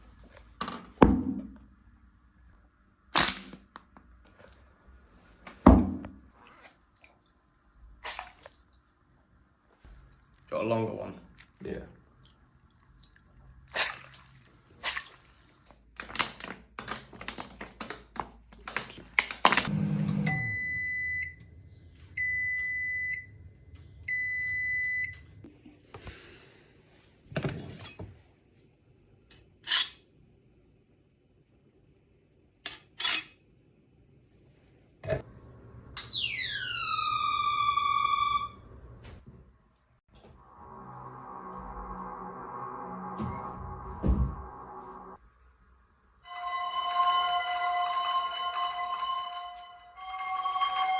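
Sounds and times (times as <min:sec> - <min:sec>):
whistling tone sliding down: 0:36.0 - 0:38.6
low hum: 0:40.1 - 0:45.3.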